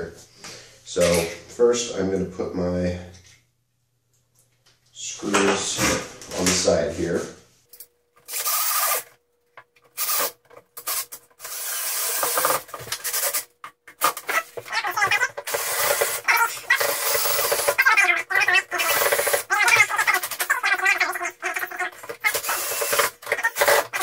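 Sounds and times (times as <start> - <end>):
screws driven into wood: 8.2 - 9.1, 10.0 - 20.5, 22.0 - 24.0.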